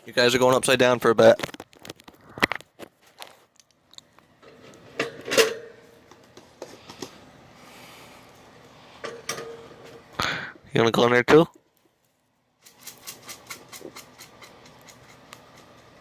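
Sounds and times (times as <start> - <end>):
objects being handled clicking: 11.5 - 16.0.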